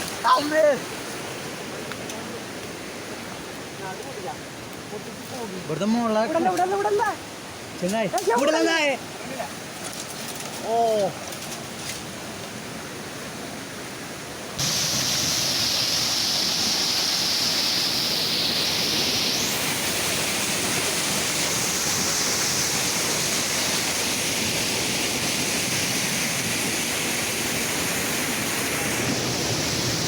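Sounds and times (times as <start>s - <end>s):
waterfall rushing: 0.0s - 9.8s, 12.4s - 30.0s
flowing water: 0.0s - 30.0s.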